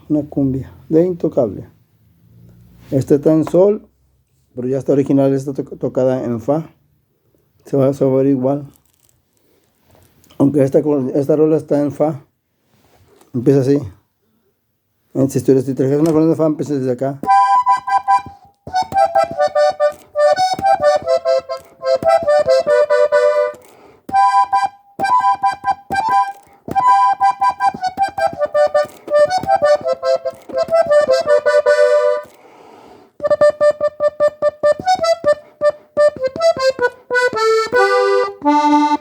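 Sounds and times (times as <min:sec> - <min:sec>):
button accordion melody: 0:17.2 - 0:32.4, 0:33.1 - 0:39.0.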